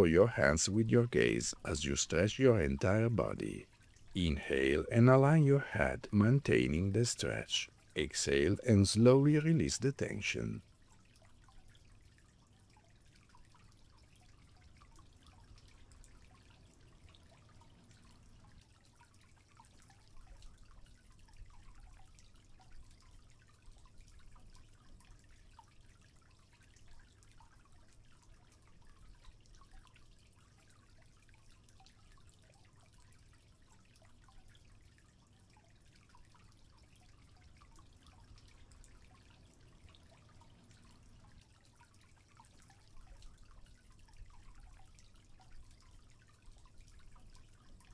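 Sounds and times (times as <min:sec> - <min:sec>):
water trickling and dripping: 0:10.5 - 0:47.9.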